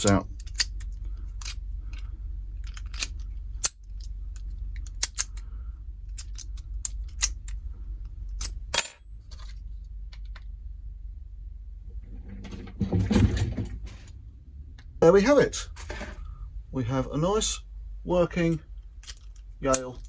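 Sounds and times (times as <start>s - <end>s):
padlock and key clicking: 0.0s - 1.6s, 2.6s - 4.1s, 4.8s - 5.4s, 6.1s - 7.6s, 8.4s - 9.0s
metal clack with ring: 8.4s - 9.0s.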